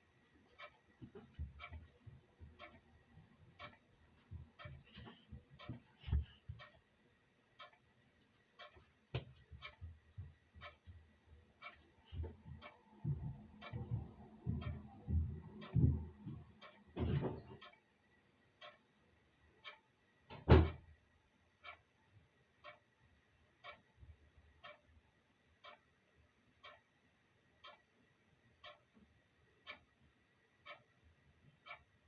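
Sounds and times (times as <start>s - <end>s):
clock ticking: 0.3s - 21.0s, 21.6s - 32.0s
low bumps and rumbling: 12.2s - 17.5s.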